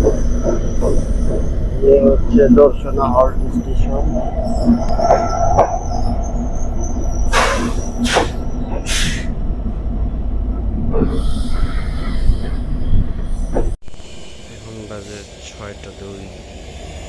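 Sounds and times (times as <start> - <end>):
train low rumble: 0.0 - 17.0
train hissing bursts: 7.3 - 9.3, 14.0 - 16.4.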